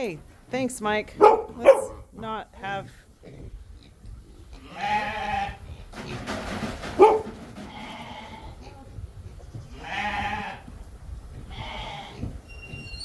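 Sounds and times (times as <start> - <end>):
animals bleating: 4.6 - 5.9, 7.0 - 9.0, 9.7 - 10.7, 11.5 - 12.4.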